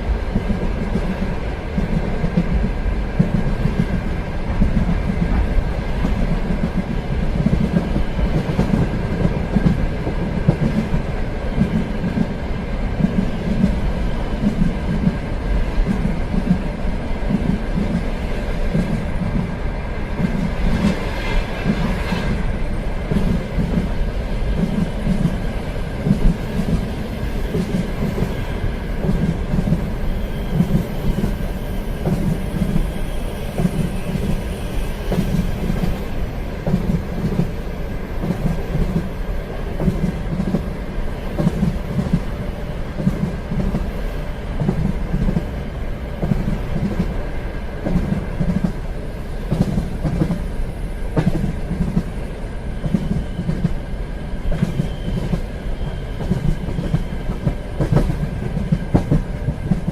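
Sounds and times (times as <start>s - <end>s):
train rumbling on rails: 0.0s - 59.9s
wheels clickety-clack over joints: 0.3s - 12.4s, 23.0s - 29.9s, 36.6s - 42.3s, 43.0s - 44.0s, 44.6s - 45.5s, 46.2s - 47.2s, 49.5s - 50.5s, 51.2s - 52.1s, 56.1s - 59.9s.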